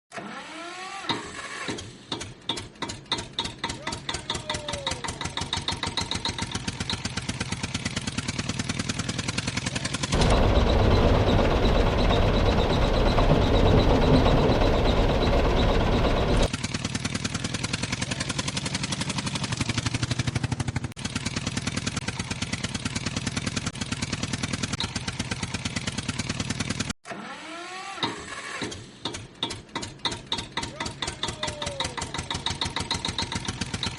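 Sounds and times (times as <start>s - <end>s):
small tractor engine chugging: 2.1s - 26.9s, 29.0s - 33.9s.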